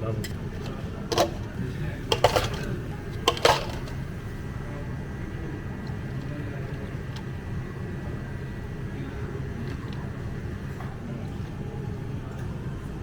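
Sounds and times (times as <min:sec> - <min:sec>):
low hum of cafe equipment: 0:00.0 - 0:13.0
clatter of things being handled: 0:00.6 - 0:04.0.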